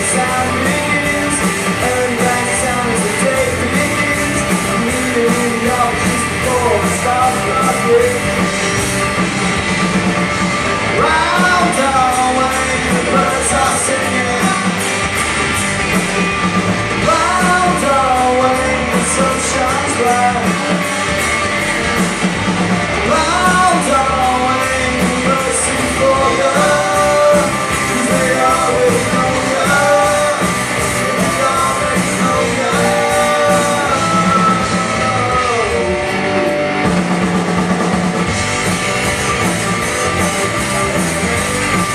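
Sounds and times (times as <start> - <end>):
lead singer singing: 0.0 - 8.8, 10.9 - 15.0, 17.0 - 21.6, 22.9 - 36.8
live rock band playing: 0.0 - 41.9.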